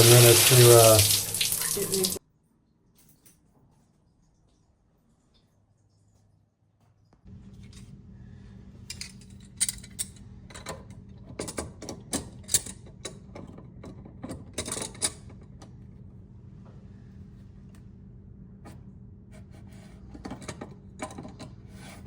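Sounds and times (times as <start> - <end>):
steady low hum: 7.3 - 11.2, 15.7 - 22.0.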